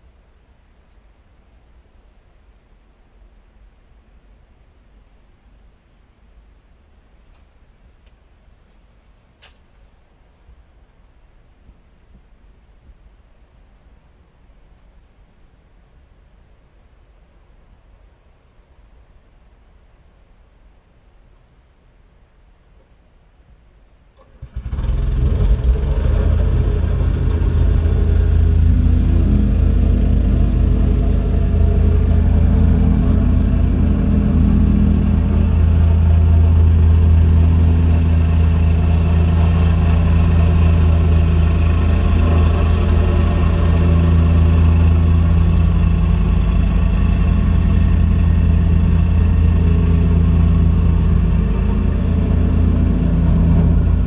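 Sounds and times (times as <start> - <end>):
mini excavator engine running: 24.2 - 54.0.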